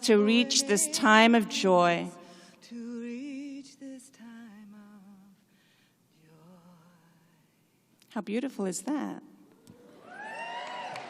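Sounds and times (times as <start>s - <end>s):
person singing slow melody: 0.0s - 5.5s, 6.1s - 7.8s.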